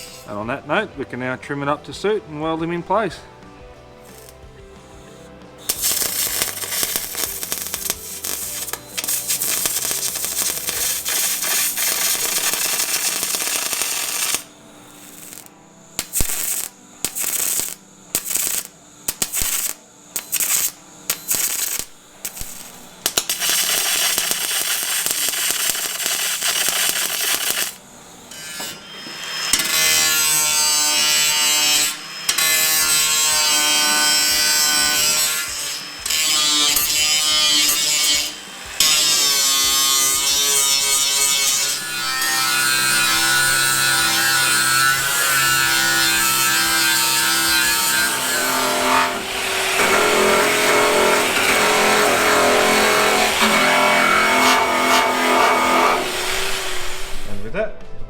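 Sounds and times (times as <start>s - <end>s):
welding bursts: 0.0s - 0.8s, 4.0s - 57.5s
steady hissing noise: 0.0s - 30.5s, 55.9s - 58.0s
electric tool motor whining: 4.0s - 57.3s.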